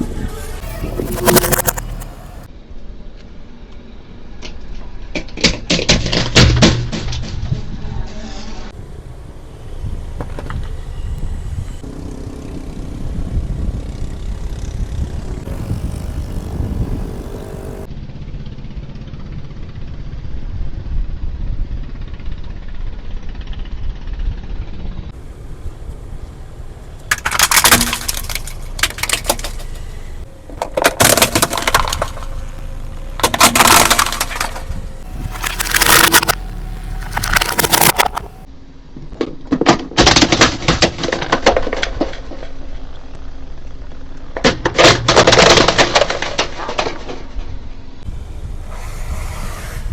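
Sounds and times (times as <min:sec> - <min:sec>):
car rolling with low rumble: 0:07.0 - 0:39.1, 0:41.2 - 0:49.9
tyre crushing brittle objects: 0:30.5 - 0:38.4.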